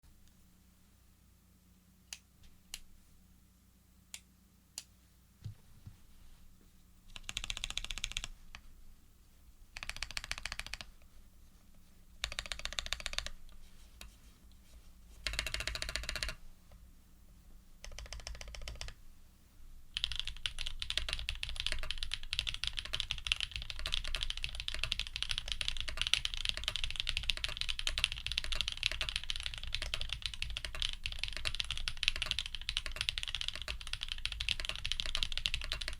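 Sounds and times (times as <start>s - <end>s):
typing on mechanical keyboard: 7.1s - 8.3s, 9.8s - 10.9s, 12.2s - 13.4s, 15.2s - 16.4s, 17.8s - 19.0s, 20.0s - 35.9s.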